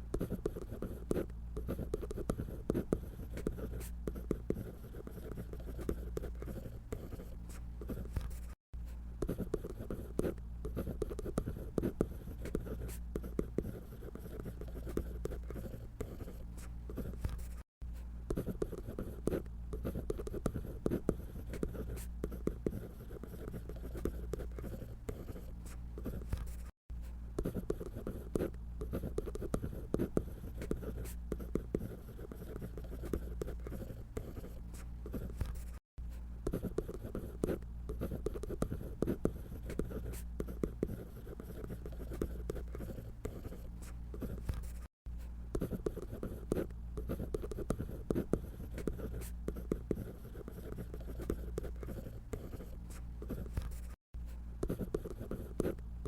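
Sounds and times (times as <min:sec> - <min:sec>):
drawing tool scratching on paper: 0:00.0 - 0:08.6, 0:09.2 - 0:17.7, 0:18.3 - 0:26.8, 0:27.4 - 0:35.8, 0:36.4 - 0:44.9, 0:45.5 - 0:54.0, 0:54.6 - 0:55.8.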